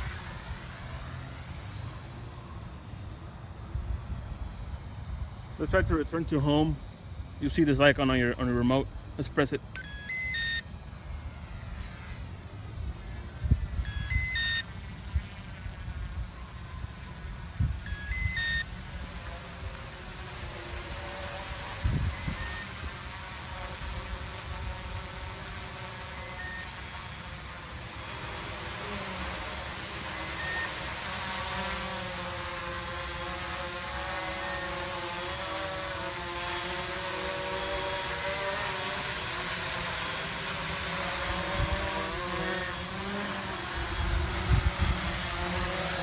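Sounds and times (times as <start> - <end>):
drone propellers whining: 0.0 - 46.0
wind rumbling on microphone: 11.4 - 14.0, 19.0 - 25.4, 41.3 - 42.2, 43.6 - 46.0.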